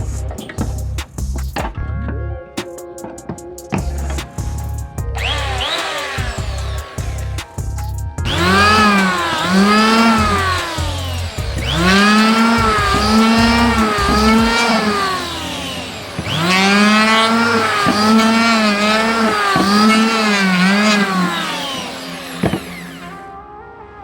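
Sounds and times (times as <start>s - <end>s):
electric hand planer motor: 5.2s - 7.6s, 8.2s - 23.3s.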